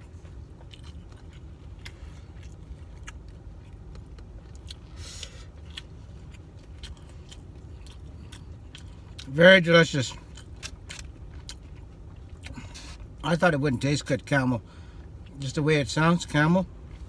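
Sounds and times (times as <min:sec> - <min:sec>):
person chewing food: 0:00.0 - 0:09.3, 0:10.1 - 0:13.2
steady low hum: 0:00.0 - 0:17.0.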